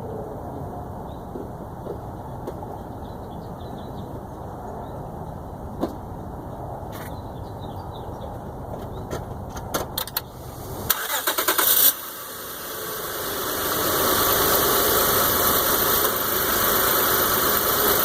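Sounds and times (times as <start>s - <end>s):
car engine idling: 10.1s - 18.0s
starter motor cranking: 10.9s - 12.0s.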